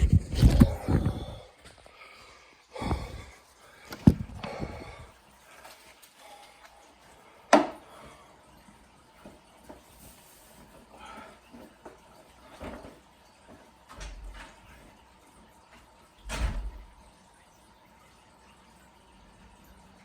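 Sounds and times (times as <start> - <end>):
objects knocking and clattering: 3.9 - 5.0.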